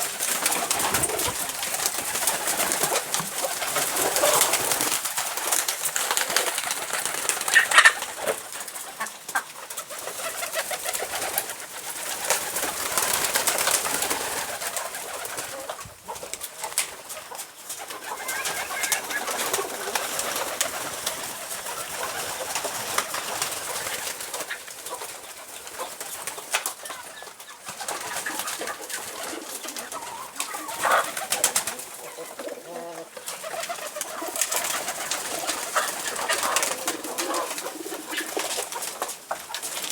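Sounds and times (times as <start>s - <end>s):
pigeons cooing: 0.0s - 39.9s.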